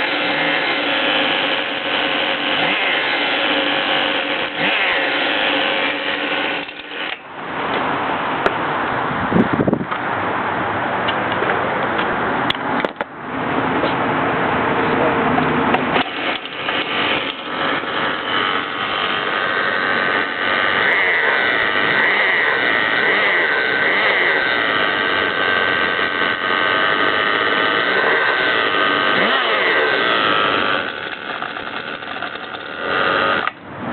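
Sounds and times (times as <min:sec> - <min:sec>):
small two-stroke engine running: 0:00.0 - 0:07.4, 0:15.7 - 0:33.9.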